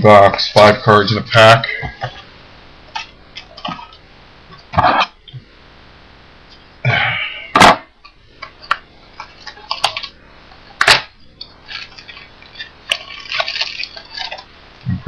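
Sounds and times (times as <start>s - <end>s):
packs rustling: 10.8s - 14.5s.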